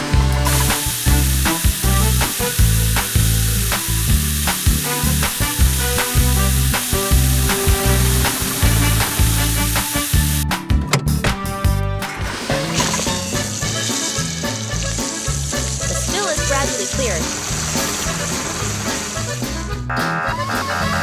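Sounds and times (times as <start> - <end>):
constant hissing noise: 0.0 - 10.4
background music with steady beat: 0.0 - 21.0.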